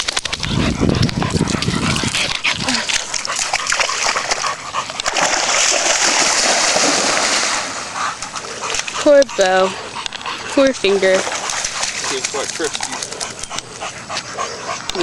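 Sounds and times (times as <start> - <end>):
dog splashing in water: 1.4 - 9.7, 10.5 - 13.4.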